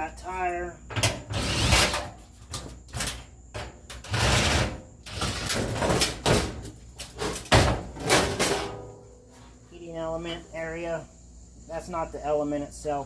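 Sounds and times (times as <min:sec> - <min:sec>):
sheet metal knocks and clanks: 0:00.9 - 0:09.1.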